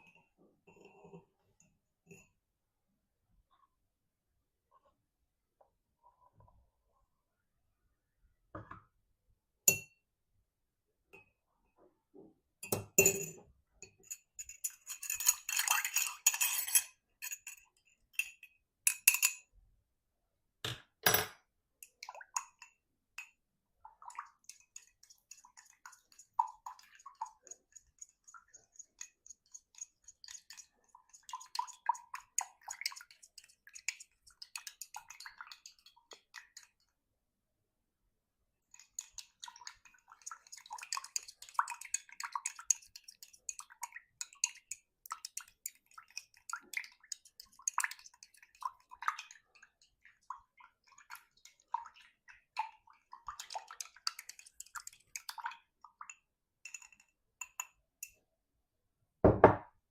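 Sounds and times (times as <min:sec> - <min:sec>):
stirrer clinking against glass: 0:12.6 - 0:19.5, 0:21.8 - 0:23.4, 0:24.0 - 0:36.8, 0:38.7 - 0:58.2.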